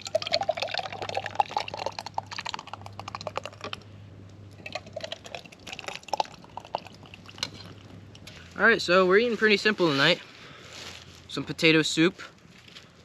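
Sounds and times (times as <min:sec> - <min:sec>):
liquid pouring: 0:00.0 - 0:03.8, 0:04.6 - 0:07.8.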